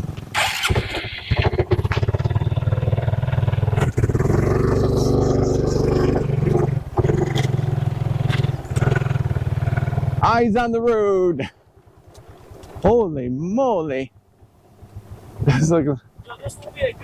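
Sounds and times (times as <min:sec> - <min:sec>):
motorcycle engine running: 0:00.0 - 0:10.4.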